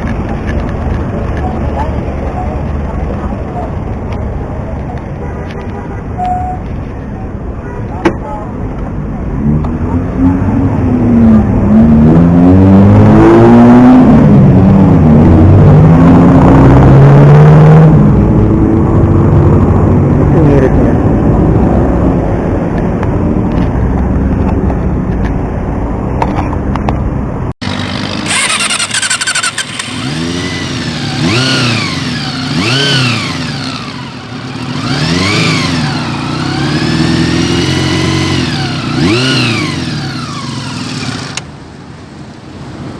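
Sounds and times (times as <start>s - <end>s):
motorcycle engine revving: 9.4s - 18.8s, 27.6s - 41.6s.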